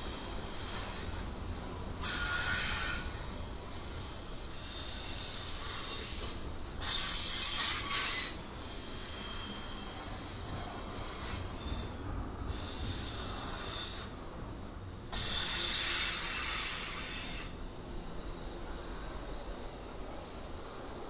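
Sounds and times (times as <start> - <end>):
freight train rumbling past: 0.0 - 21.0.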